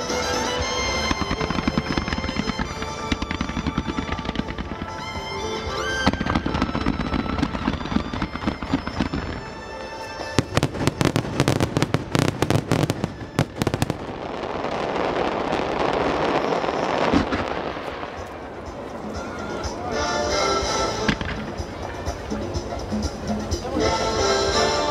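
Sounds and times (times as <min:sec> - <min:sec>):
crackling fireworks hiss: 0:00.0 - 0:24.9
music: 0:00.0 - 0:24.9
fireworks bursts and pops: 0:01.0 - 0:19.0.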